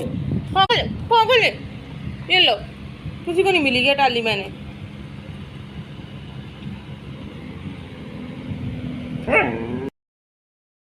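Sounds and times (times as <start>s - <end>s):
dog whining: 9.2s - 9.9s.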